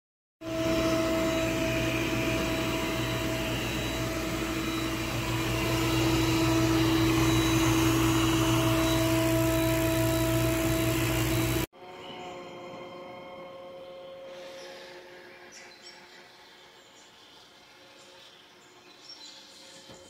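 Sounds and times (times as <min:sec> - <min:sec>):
robot vacuum whirring: 0:00.4 - 0:11.7.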